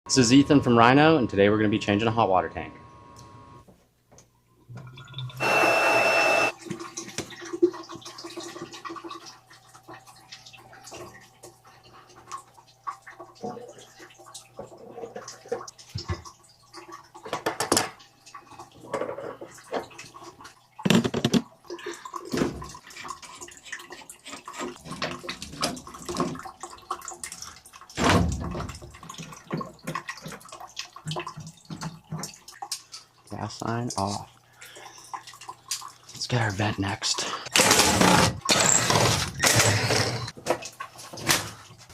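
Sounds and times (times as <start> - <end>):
water running: 4.8 - 41.9
loud noisy burst: 5.4 - 6.5
plumbing knocks and clanks: 20.8 - 21.5.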